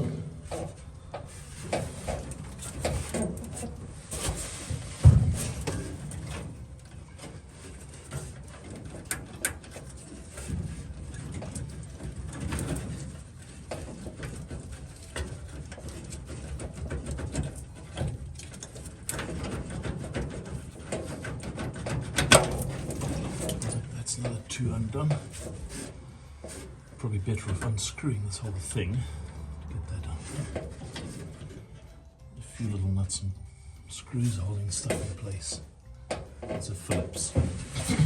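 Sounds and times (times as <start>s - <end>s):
clicks and rattles of hand work: 0.0s - 33.4s, 34.2s - 38.0s
heavy thump: 4.2s - 6.0s.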